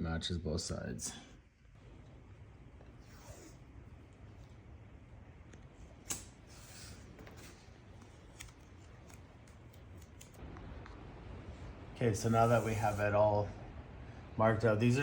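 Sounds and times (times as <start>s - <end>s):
tape rustling and clicking: 7.1s - 11.0s.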